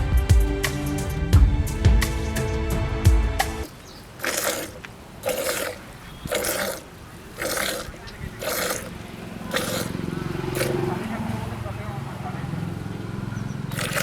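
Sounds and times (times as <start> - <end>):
milk jets hissing into pail: 3.6 - 11.0, 13.7 - 14.0.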